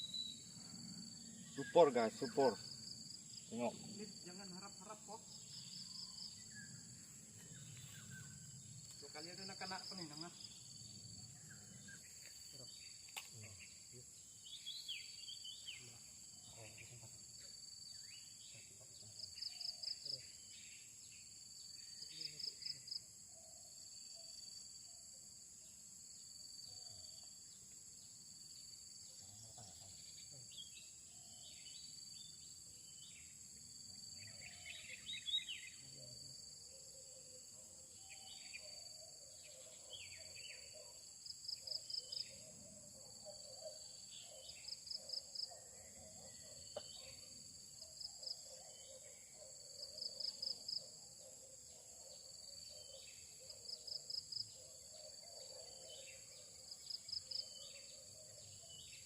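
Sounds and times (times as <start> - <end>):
birds chirping: 0.0 - 22.6
insects droning: 0.0 - 59.0.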